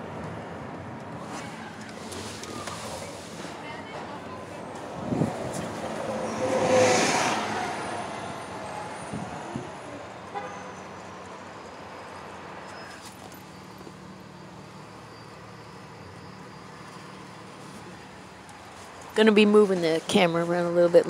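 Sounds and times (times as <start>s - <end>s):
engine and tyres humming: 0.0s - 20.9s
vehicle rushing past: 4.6s - 10.7s.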